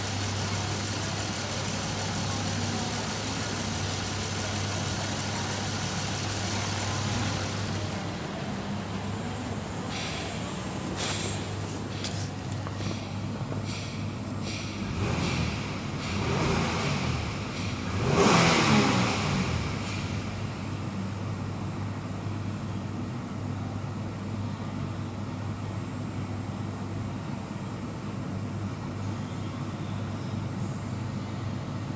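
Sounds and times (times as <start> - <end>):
car engine idling and revving: 0.0 - 11.4, 12.0 - 21.5.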